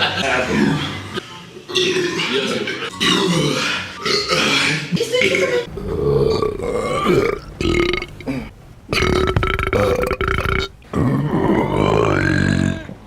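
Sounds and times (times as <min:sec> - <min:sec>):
man belching loudly: 0:05.7 - 0:12.7.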